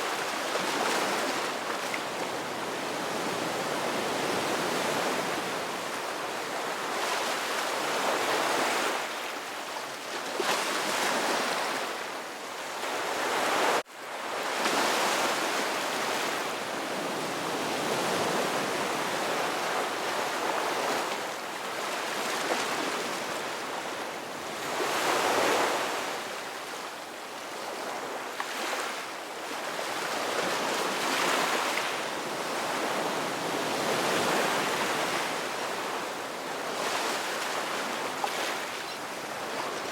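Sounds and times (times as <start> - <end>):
ocean waves breaking: 0.0 - 5.8, 29.7 - 39.9.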